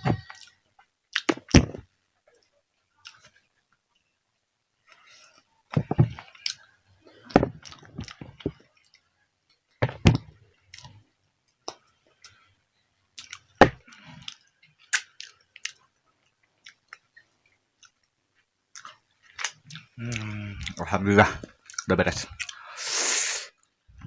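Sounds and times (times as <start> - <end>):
wet mouth clicks: 14.2 - 15.8.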